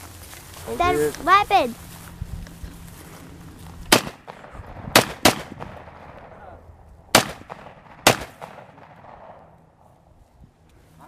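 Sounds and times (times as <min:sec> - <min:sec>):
gunshots: 0:03.9 - 0:09.5.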